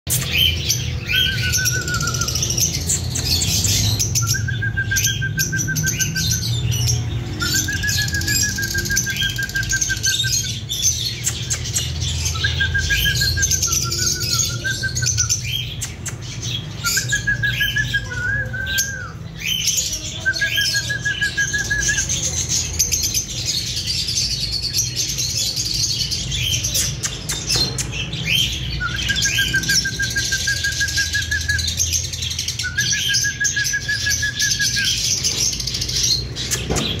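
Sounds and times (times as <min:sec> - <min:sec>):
lovebirds chirping: 0:00.1 - 0:37.0.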